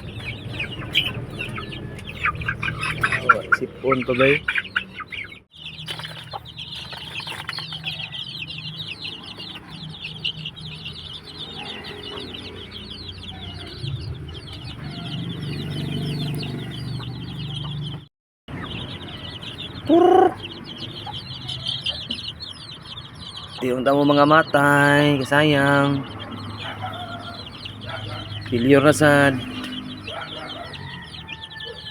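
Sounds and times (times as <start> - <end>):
chicks peeping: 0.0 - 31.9
louder chick call: 19.9 - 20.4.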